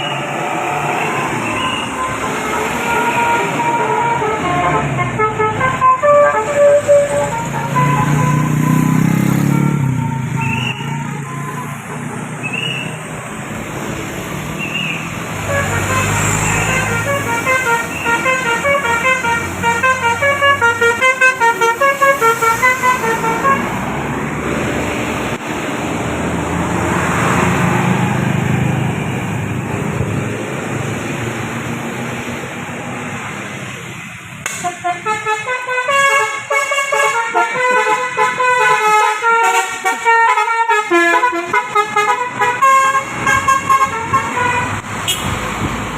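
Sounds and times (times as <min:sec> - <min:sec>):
bus engines rumbling: 0:00.0 - 0:45.9
road traffic: 0:00.0 - 0:45.9
multi-tone bus horn tune: 0:01.0 - 0:12.4, 0:15.4 - 0:23.8, 0:34.5 - 0:45.4.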